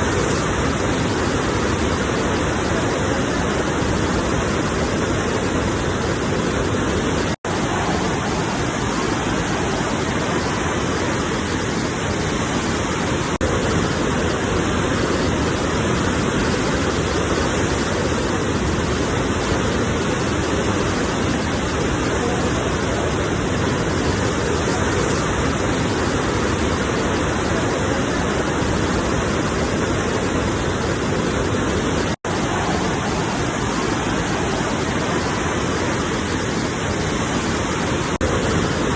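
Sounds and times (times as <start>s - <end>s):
ocean waves and surf: 0.0s - 38.9s.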